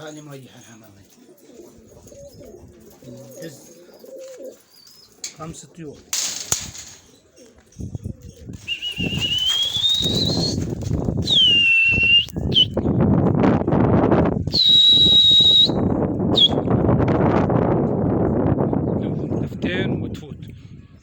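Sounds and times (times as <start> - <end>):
pigeons' wings flapping: 8.5 - 11.7
sharp whistled notes: 8.6 - 10.6, 11.2 - 12.7, 14.5 - 16.7.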